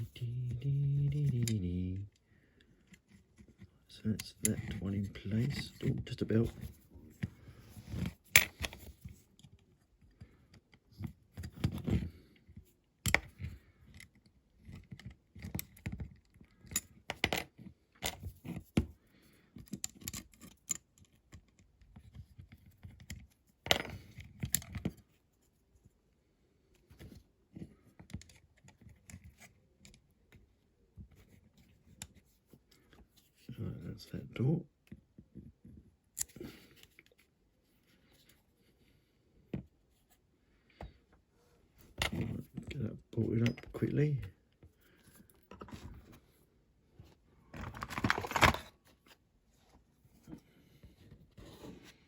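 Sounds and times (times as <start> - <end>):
small metal parts clicking and rattling: 19.6 - 21.6.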